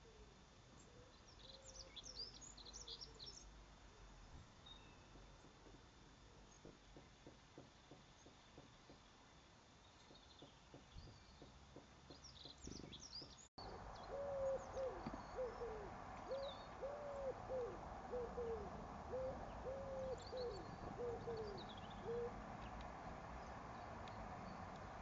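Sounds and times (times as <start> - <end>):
small birds chirping: 0.7 - 3.6, 8.1 - 25.0
bird low hooting notes: 12.8 - 22.7.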